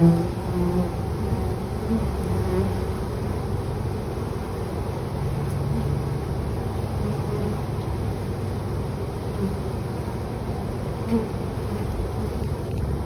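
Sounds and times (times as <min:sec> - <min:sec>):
bee buzzing close past: 0:00.0 - 0:08.4, 0:09.1 - 0:13.0
bee swarm buzzing: 0:00.0 - 0:13.0
low background rumble: 0:00.0 - 0:13.0.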